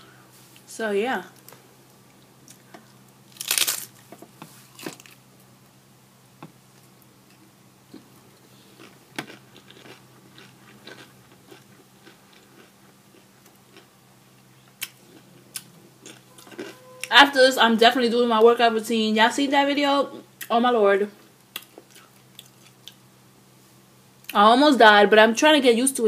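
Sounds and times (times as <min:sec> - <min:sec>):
crunching bite of tortilla: 0:03.3 - 0:05.2, 0:07.9 - 0:13.9
chewing mouth sounds: 0:08.8 - 0:13.9.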